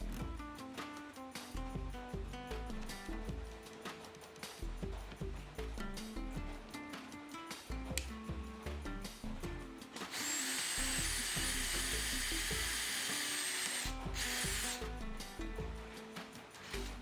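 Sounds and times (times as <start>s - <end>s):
background music: 0.0s - 17.0s
small power tool whining: 10.0s - 14.8s.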